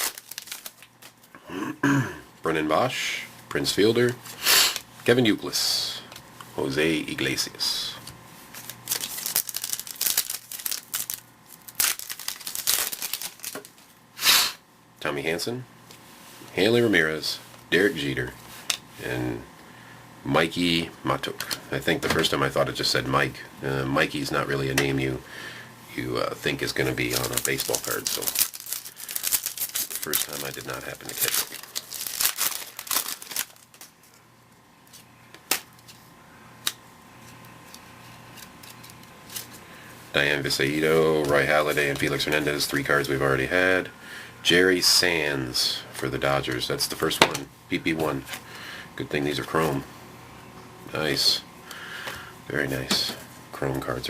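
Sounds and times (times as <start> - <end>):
cards rustling: 0.0 - 1.3, 8.0 - 13.9, 26.5 - 34.3, 34.9 - 39.6
plastic wrapper crinkling and tearing: 0.0 - 1.3, 8.6 - 13.9, 26.6 - 36.0, 36.6 - 39.6
low steady hum: 0.0 - 54.0.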